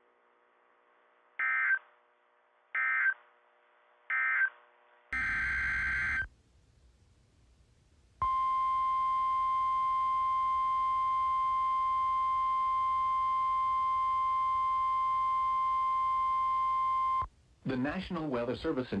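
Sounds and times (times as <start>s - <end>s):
steady loud alarm tone: 5.2s - 6.3s.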